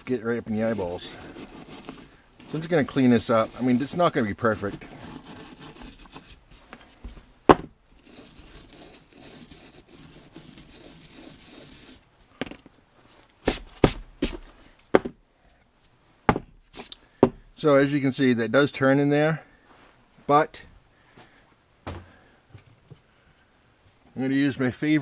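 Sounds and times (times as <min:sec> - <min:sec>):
brush scrubbing metal wheel: 0:00.0 - 0:06.7, 0:07.9 - 0:12.0.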